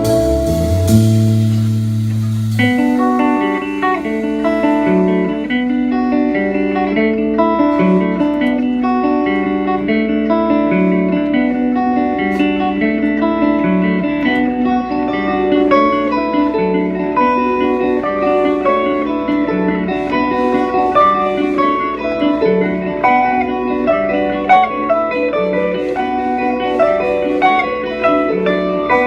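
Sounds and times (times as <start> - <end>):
low bass line: 0.0 - 5.3
plucked guitar notes: 0.0 - 29.0.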